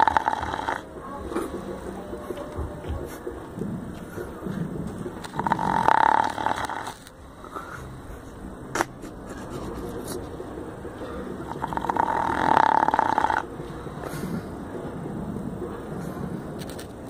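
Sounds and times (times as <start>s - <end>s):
dog snoring: 0.0s - 0.9s, 5.3s - 7.0s, 11.4s - 13.5s
dog breathing: 0.0s - 15.3s.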